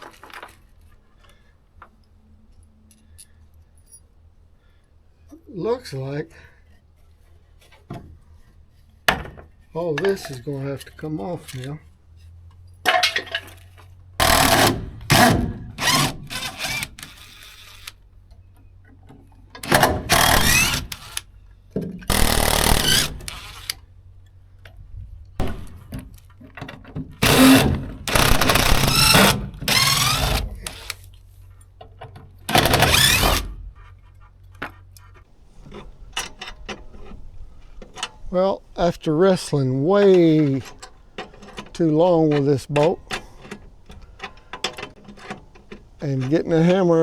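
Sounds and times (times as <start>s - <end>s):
tool bursts with squealing: 14.2s - 17.9s, 19.6s - 21.2s, 22.1s - 23.8s, 27.2s - 31.0s, 32.5s - 33.6s.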